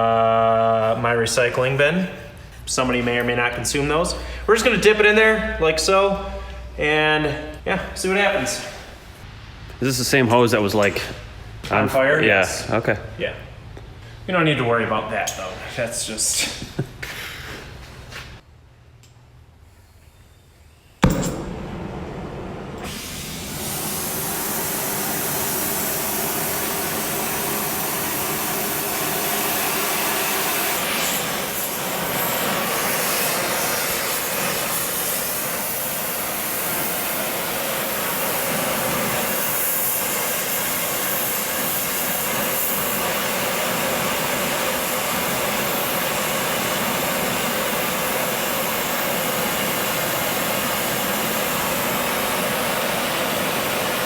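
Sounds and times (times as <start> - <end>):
gas torch flame hissing: 19.8 - 54.0
torch igniting pop: 21.0 - 24.4.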